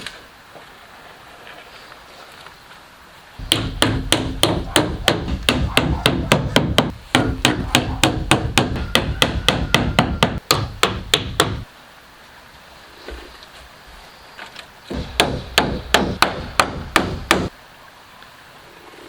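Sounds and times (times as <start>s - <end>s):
hammer blows: 3.4s - 11.7s.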